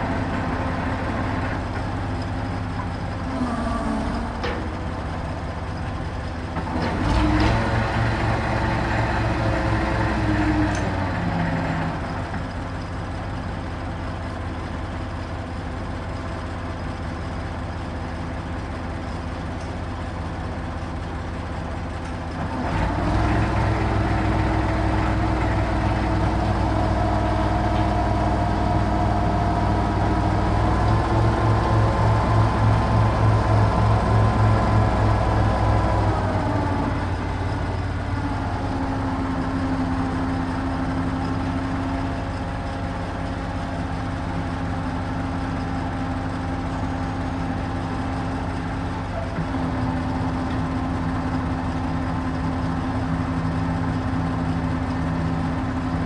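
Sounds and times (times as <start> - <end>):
crane truck engine revving: 0.0 - 56.0.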